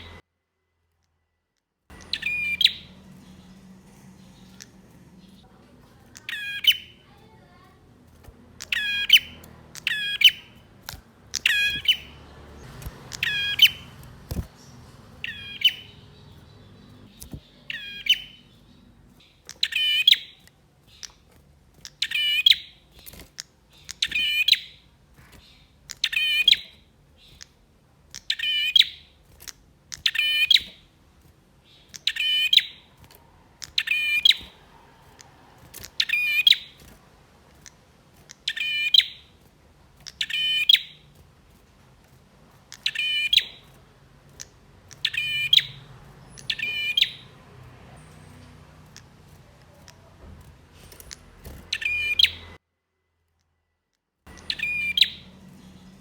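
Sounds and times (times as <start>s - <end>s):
bird singing warbled phrase: 1.9s - 20.4s, 42.7s - 43.8s, 44.4s - 50.2s, 51.1s - 52.6s, 54.3s - 56.0s.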